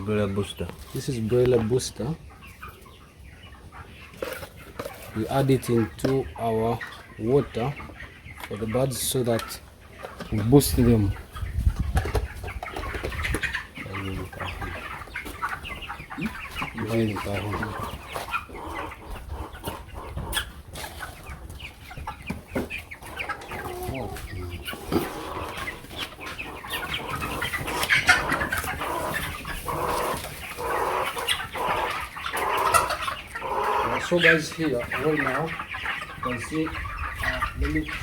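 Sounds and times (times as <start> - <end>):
chickens clucking and cheeping: 0.0 - 38.0.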